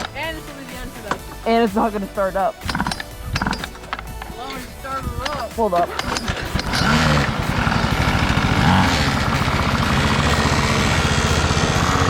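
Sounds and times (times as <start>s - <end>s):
small engine buzzing and revving: 2.5s - 12.0s.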